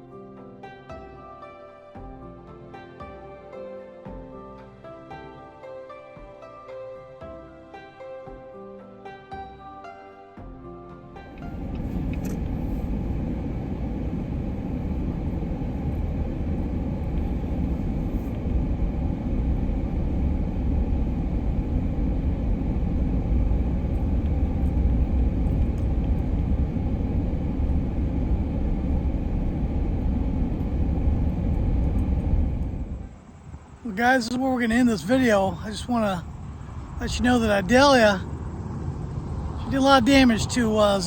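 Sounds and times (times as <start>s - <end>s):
car driving rumble: 11.3s - 41.0s.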